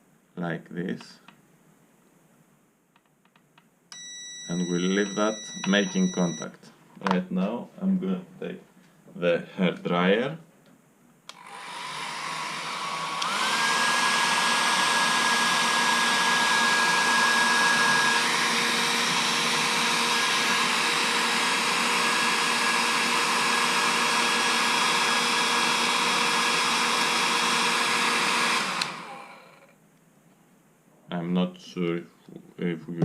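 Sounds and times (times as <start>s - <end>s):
hair dryer running: 11.3s - 29.7s.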